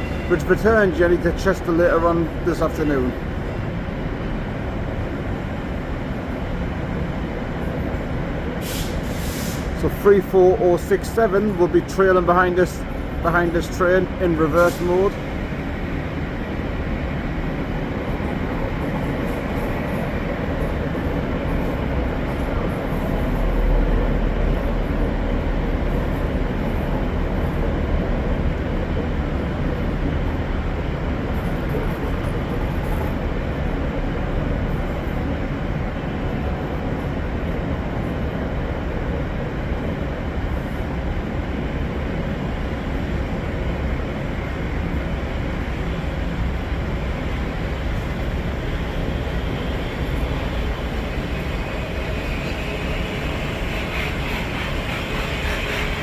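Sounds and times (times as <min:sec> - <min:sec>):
passenger train passing: 0:00.0 - 0:56.0.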